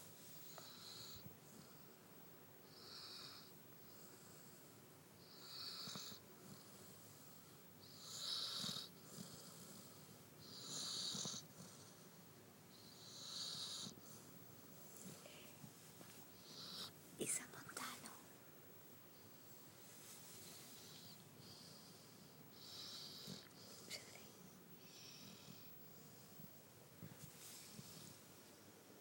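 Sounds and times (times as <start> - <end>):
pet snoring: 0.4 - 1.9, 2.6 - 12.1, 12.7 - 14.3, 16.4 - 17.0, 20.4 - 26.4.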